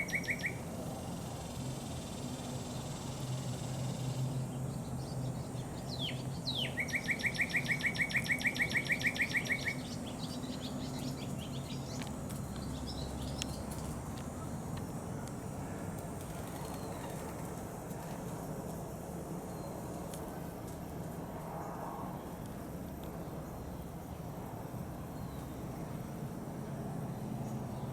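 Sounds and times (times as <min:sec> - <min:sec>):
songbird whistles and trill: 0:00.0 - 0:00.6, 0:05.9 - 0:12.0.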